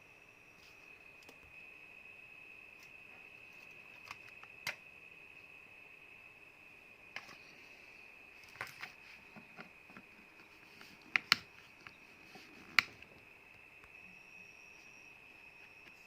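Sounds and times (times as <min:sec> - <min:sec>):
faint high-pitched whine: 0:00.0 - 0:16.0.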